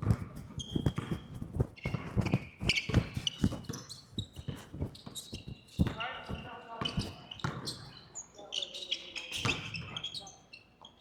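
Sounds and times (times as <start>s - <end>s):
basketball dribbling thuds: 0.0s - 7.9s
sneaker squeaks: 0.0s - 11.0s.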